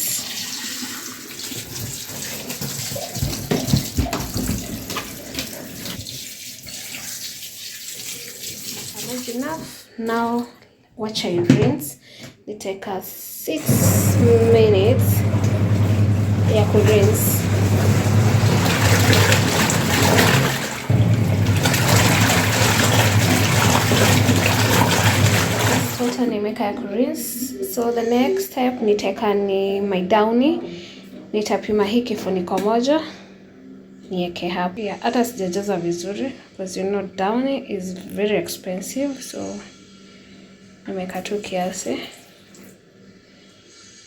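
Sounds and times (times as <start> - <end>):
tap water running into a tub: 0.0 - 9.8, 13.6 - 26.3
washing machine motor humming: 13.6 - 26.3.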